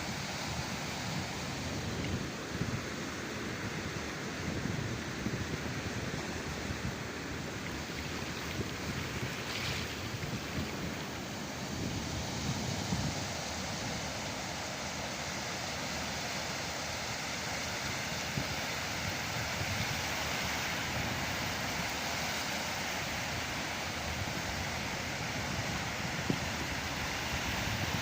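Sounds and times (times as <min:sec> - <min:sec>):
wind buffeting microphone: 0:04.5 - 0:13.4
sea waves breaking: 0:06.8 - 0:14.7.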